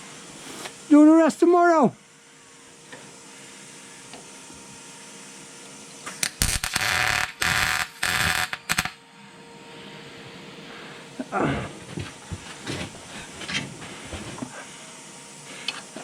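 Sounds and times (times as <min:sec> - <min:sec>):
arc welder crackling bursts: 0:06.1 - 0:09.0.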